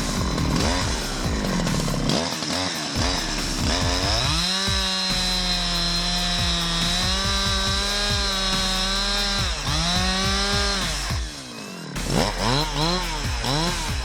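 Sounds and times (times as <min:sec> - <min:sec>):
chainsaw cutting wood: 0:00.0 - 0:14.0.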